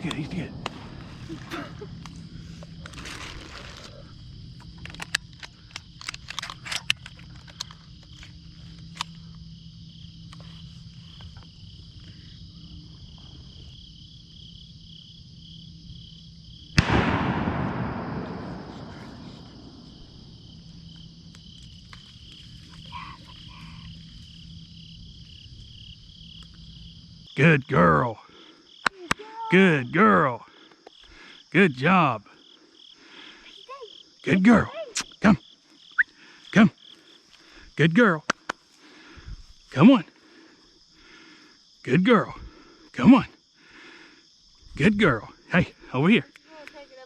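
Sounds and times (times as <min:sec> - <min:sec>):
shotgun shot echoing: 0:00.0 - 0:02.2, 0:16.8 - 0:20.5
crickets chirping: 0:00.0 - 0:47.0
clicks and rustles: 0:04.6 - 0:09.2.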